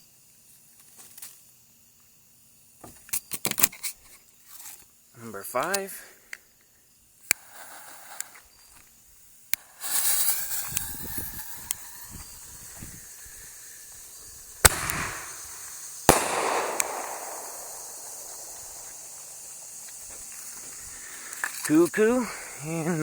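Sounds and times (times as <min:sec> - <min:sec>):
fuse hissing and sputtering: 0:07.2 - 0:23.0
firework shell bursting: 0:09.5 - 0:22.2
mortar launch bang: 0:14.6 - 0:19.8.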